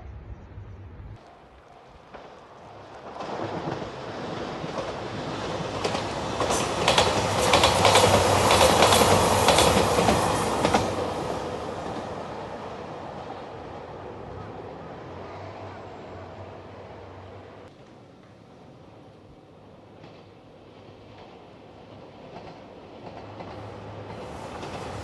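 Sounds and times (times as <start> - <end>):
diesel train passing: 0.0 - 25.0.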